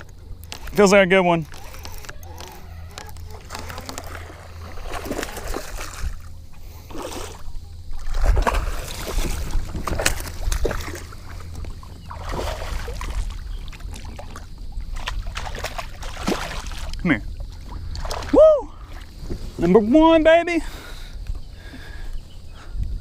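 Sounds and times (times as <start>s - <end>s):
water sloshing and splashing: 0.0s - 19.8s
steady low rumble: 0.0s - 19.9s.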